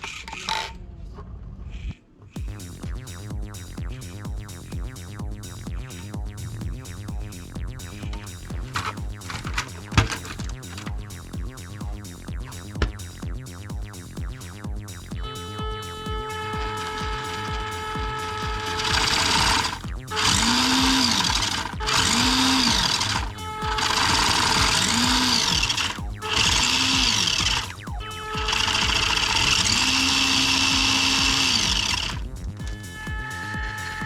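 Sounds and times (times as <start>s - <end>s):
toy car electric motor whirring: 15.8s - 34.0s.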